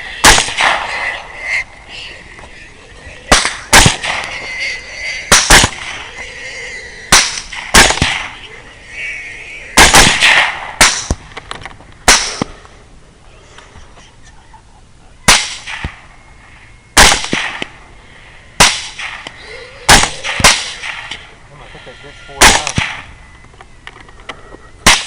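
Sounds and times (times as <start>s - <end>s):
gunshots: 0.2s - 1.6s, 3.2s - 6.2s, 7.1s - 8.6s, 9.7s - 11.3s, 12.0s - 12.5s, 15.3s - 16.0s, 17.0s - 17.8s, 18.6s - 19.3s, 19.9s - 21.3s, 22.4s - 23.1s.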